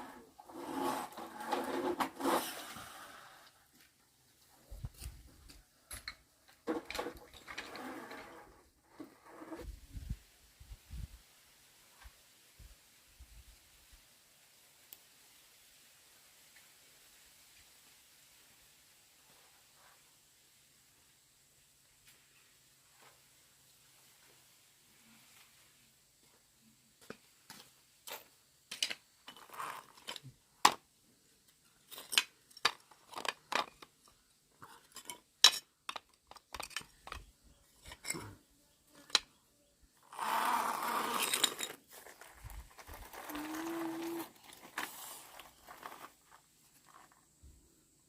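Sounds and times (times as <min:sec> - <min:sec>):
scraping and rustling: 0:00.0 - 0:03.5, 0:29.2 - 0:30.4, 0:40.0 - 0:47.3
objects clicking and knocking: 0:28.7 - 0:30.8, 0:31.8 - 0:38.4.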